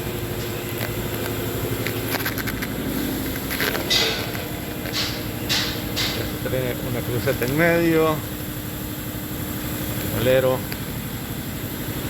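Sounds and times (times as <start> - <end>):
mechanical hum: 0.0 - 12.0.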